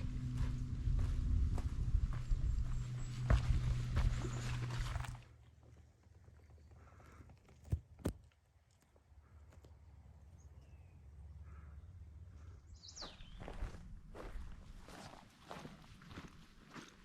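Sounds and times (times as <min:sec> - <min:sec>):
footsteps on dirt trail: 0:00.0 - 0:05.3, 0:12.9 - 0:17.0.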